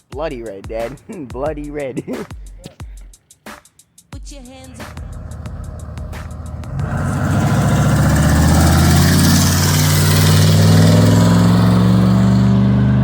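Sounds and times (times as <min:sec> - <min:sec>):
pickup engine revving: 0:04.6 - 0:13.0.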